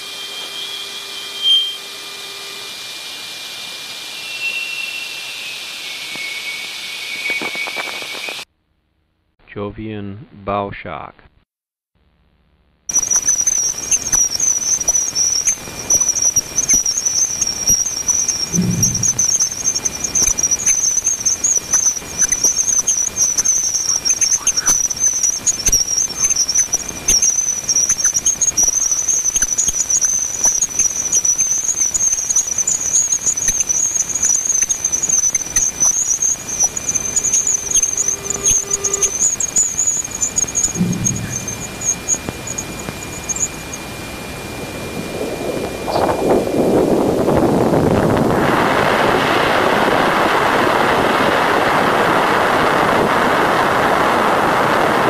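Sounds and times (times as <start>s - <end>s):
high crackling hiss: 0.0s - 8.5s, 12.8s - 55.0s
faint thin tone: 18.4s - 20.4s, 36.6s - 44.3s
low thumps: 18.4s - 20.5s, 40.6s - 43.5s.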